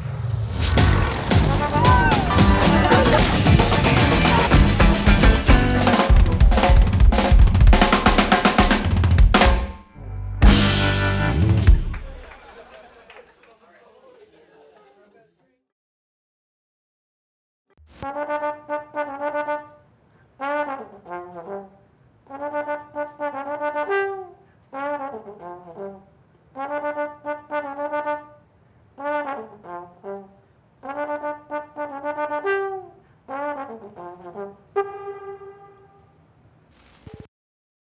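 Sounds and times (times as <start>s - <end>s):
brass instrument phrases: 0.8s - 12.3s, 29.0s - 35.8s.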